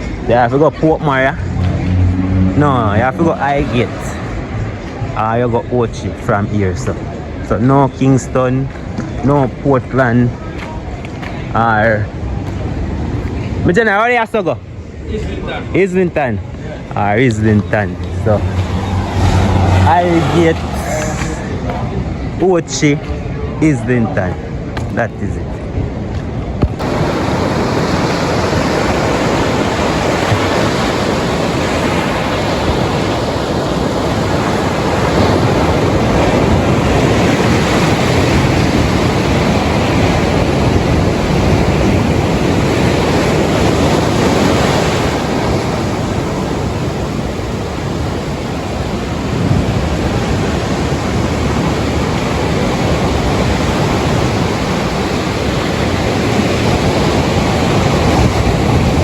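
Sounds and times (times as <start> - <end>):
rough sea surf: 0.0 - 7.4, 8.2 - 23.1, 25.7 - 59.0
wind buffeting microphone: 14.6 - 23.6, 25.7 - 59.0.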